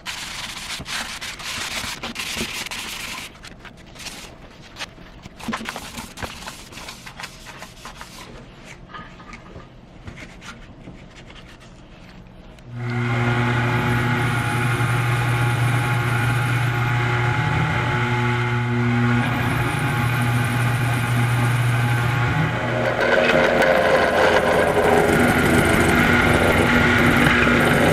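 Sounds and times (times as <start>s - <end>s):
electric machine motor hum: 12.7s - 27.9s.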